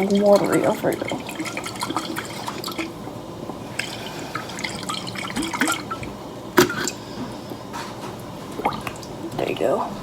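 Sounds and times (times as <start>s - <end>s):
liquid glugging and dripping: 0.0s - 7.6s, 8.2s - 9.6s.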